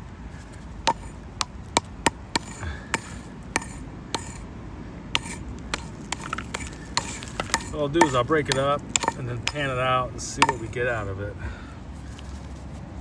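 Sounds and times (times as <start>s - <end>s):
hand tool tapping hard soil: 0.5s - 4.4s, 5.2s - 10.8s.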